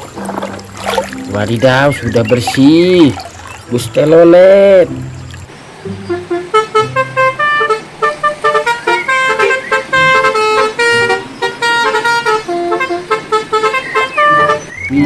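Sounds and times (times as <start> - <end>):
bus horn tootling melody: 5.9 - 15.0.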